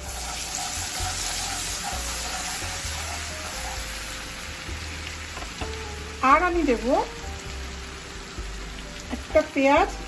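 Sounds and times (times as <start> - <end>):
onions sizzling in hot oil: 0.0 - 10.0.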